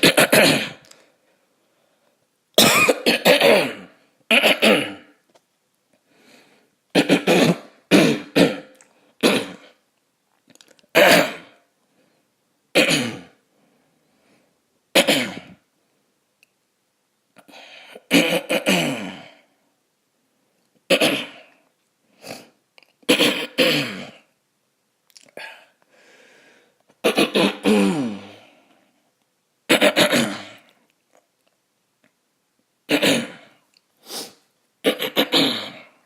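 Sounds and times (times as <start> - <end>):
man clearing his throat: 0.0 - 0.8, 2.6 - 5.2, 7.0 - 9.7, 12.8 - 13.4, 15.0 - 15.6, 18.1 - 19.4, 23.1 - 24.2, 27.0 - 28.4, 29.7 - 30.6, 32.9 - 33.5, 34.8 - 36.0.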